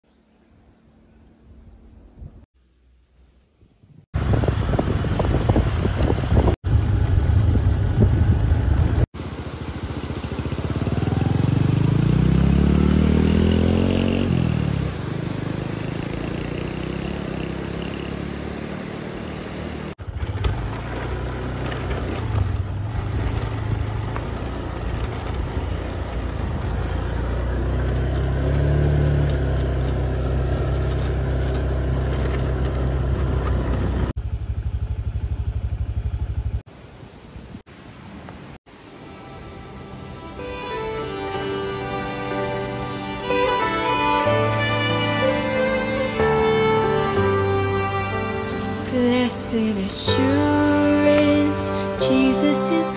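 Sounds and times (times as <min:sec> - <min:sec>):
vehicle engine revving: 0:09.9 - 0:36.6.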